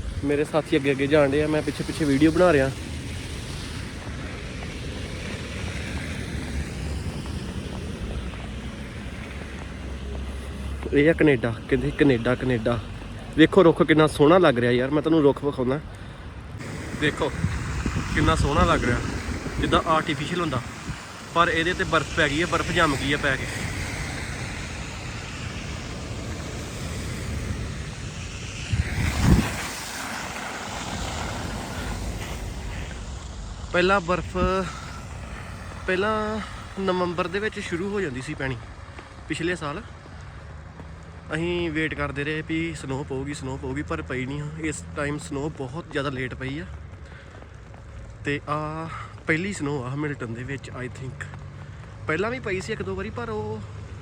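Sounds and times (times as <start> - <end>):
wind rumbling on microphone: 0.0 - 43.1.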